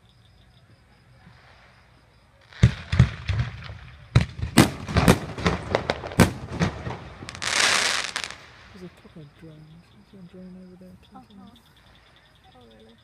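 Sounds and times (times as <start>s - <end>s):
fireworks bangs and crackles: 1.2s - 9.1s.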